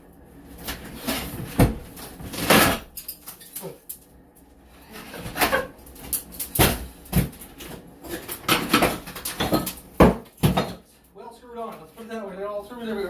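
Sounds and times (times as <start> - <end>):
demolition knocks and bangs: 8.1 - 10.8.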